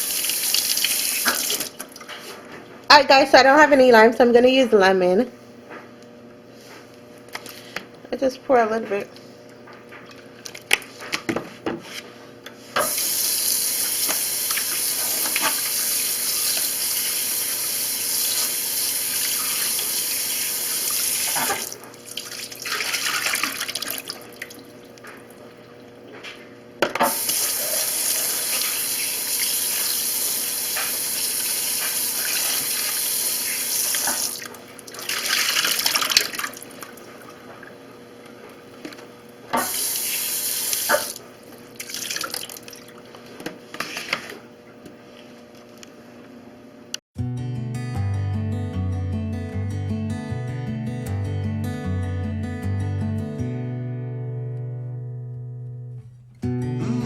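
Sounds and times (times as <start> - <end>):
tap running into sink: 13.8 - 15.7.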